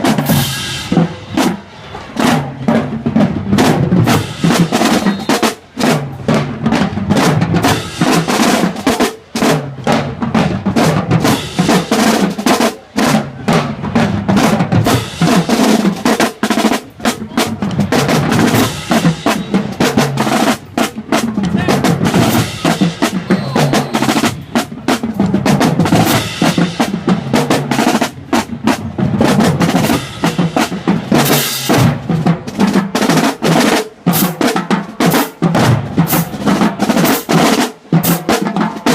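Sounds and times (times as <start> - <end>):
snare drum rolls: 0.0 - 38.9
bass drum beats: 16.9 - 27.6.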